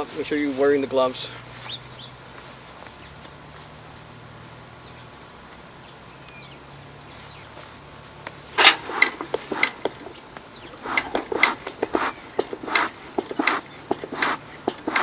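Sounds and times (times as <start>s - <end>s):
rustling and handling clicks: 8.3s - 15.0s.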